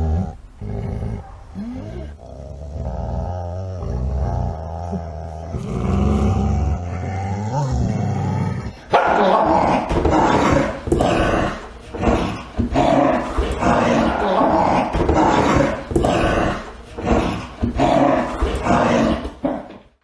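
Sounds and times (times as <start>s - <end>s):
dogs growling and snarling: 0.0s - 19.8s.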